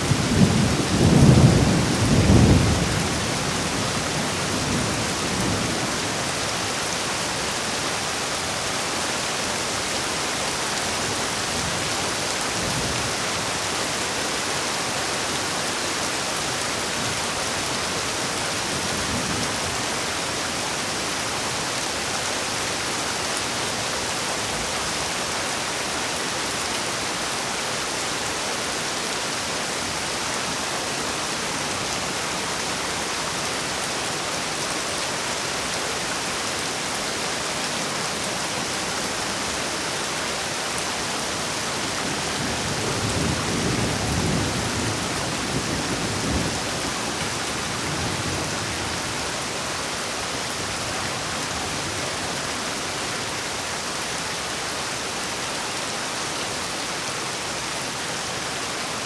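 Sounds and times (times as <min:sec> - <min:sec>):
heavy rain: 0:00.0 - 0:59.0.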